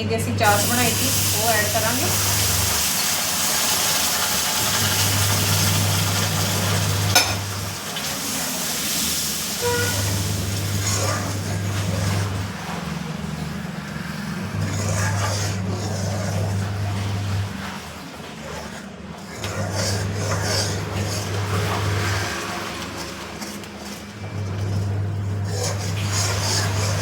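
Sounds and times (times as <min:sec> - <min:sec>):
flour mixture sizzling: 0:00.0 - 0:27.0
spoon scraping pan: 0:25.5 - 0:27.0.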